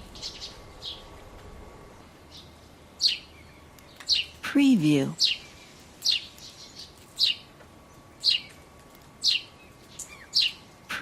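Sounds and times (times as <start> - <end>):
bird chirping: 2.0 - 8.6, 9.2 - 11.0.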